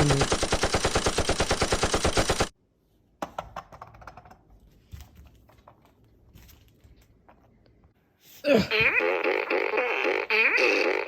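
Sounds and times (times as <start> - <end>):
rapid machine-gun fire: 0.0 - 2.5.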